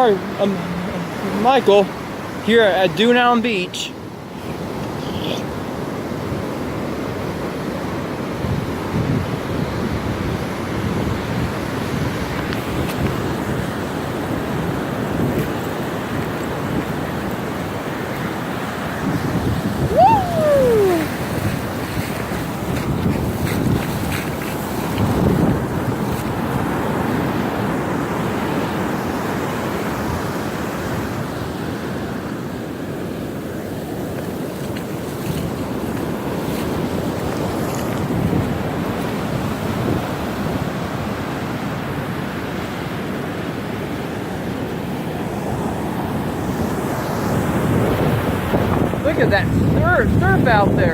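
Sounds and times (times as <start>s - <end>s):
surf waves crashing: 0.0s - 50.9s
wind buffeting microphone: 8.4s - 41.0s, 46.0s - 50.9s.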